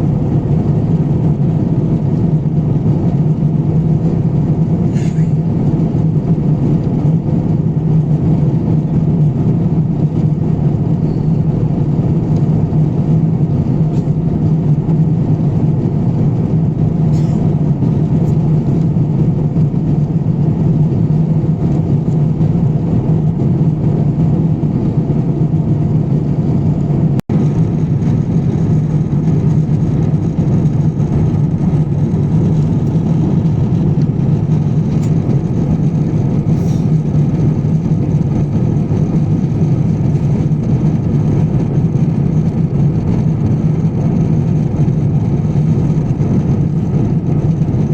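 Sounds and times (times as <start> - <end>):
air rushing over fuselage: 0.0 - 47.9
jet engine hum: 0.0 - 47.9.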